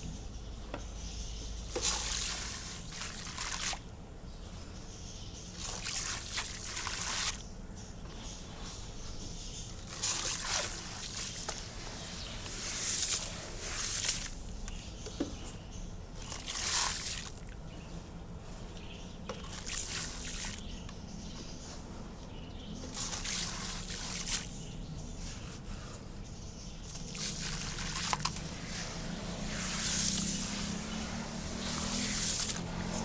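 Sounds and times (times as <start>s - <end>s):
concrete pouring into water: 16.2s - 17.5s, 19.4s - 20.7s, 26.9s - 33.0s.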